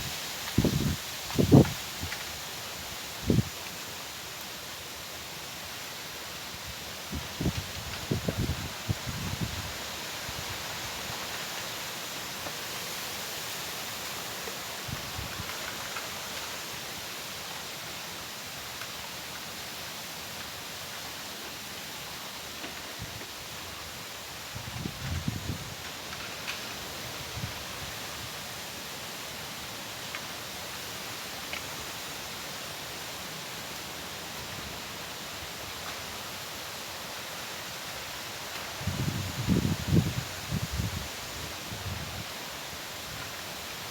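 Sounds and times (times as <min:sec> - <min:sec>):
wind: 0:00.0 - 0:43.9.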